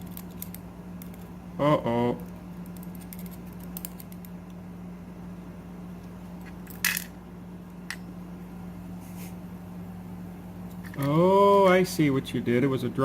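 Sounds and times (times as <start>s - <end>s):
metal lock parts clinking: 0.0s - 1.3s, 2.6s - 4.3s, 6.4s - 7.2s.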